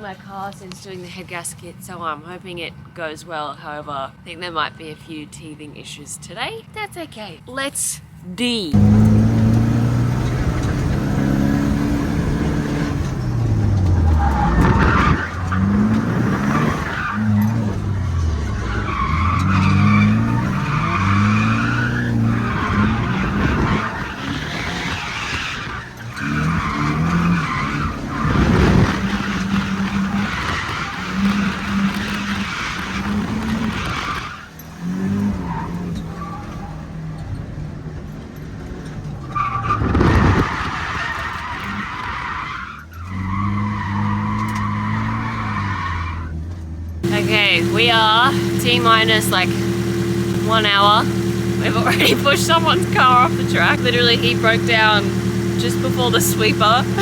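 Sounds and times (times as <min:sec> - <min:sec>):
car engine revving hard: 0:08.7 - 0:36.9, 0:43.1 - 0:46.3, 0:47.0 - 0:57.0
tyres squealing: 0:08.8 - 0:34.6, 0:39.2 - 0:46.4, 0:47.0 - 0:57.0.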